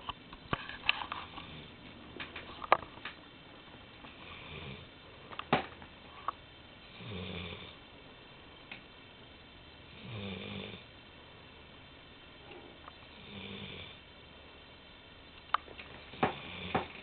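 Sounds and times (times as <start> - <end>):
dog snoring: 1.2 - 1.8, 4.2 - 4.9, 6.9 - 7.8, 9.9 - 10.9, 12.5 - 14.0, 16.1 - 17.0.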